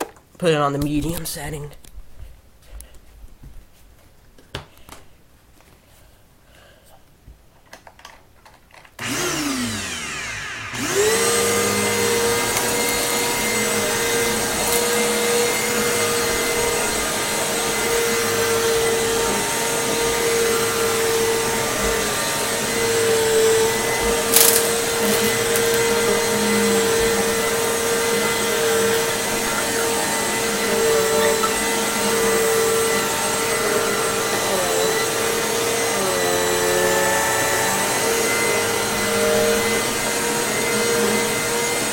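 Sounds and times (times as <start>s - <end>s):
vacuum cleaner motor humming: 9.0s - 41.9s.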